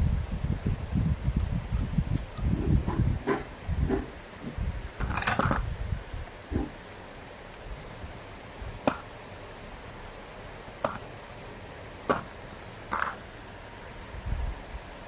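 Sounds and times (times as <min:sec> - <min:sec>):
steady low hiss: 0:00.0 - 0:15.0
sharp clicks of hard objects: 0:10.8 - 0:11.1, 0:12.9 - 0:13.2.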